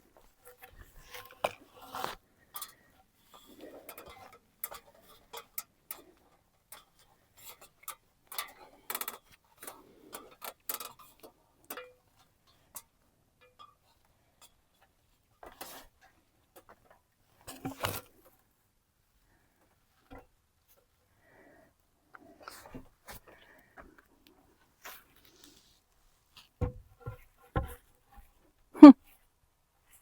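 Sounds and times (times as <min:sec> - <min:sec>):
light clicks and knocks of tools: 0:00.2 - 0:18.4.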